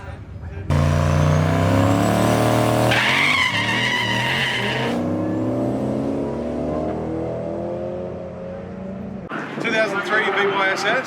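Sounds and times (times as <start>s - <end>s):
car engine at high revs: 0.7s - 9.3s
tyres squealing: 2.9s - 5.0s.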